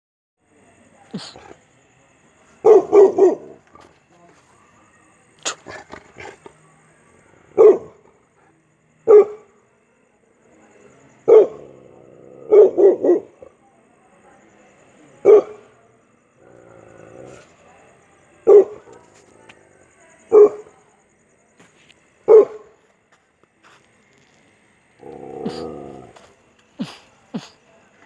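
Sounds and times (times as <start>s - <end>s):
dog barking: 1.1s - 1.6s, 2.6s - 4.8s, 5.4s - 6.7s, 7.4s - 8.1s, 9.1s - 9.5s, 11.3s - 11.6s, 12.5s - 13.4s, 15.2s - 15.7s, 18.4s - 19.6s, 20.3s - 20.8s, 22.3s - 22.8s, 25.0s - 27.5s.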